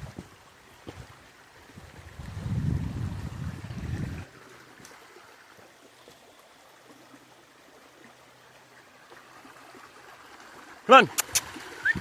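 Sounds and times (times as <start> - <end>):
creek water over stones: 0.0 - 12.0.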